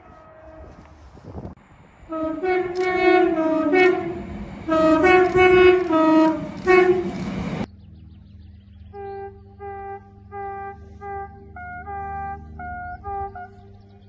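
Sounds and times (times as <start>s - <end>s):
moving train noise: 0.0s - 7.7s
train horn blasts: 0.0s - 7.7s, 8.9s - 13.8s
single-note horn toots: 2.1s - 7.3s, 8.9s - 13.8s.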